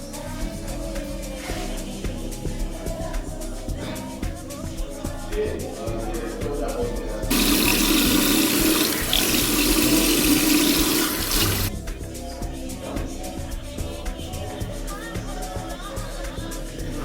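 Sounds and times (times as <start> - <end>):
background pop music: 0.0 - 17.0
tap water running into sink: 7.3 - 11.7.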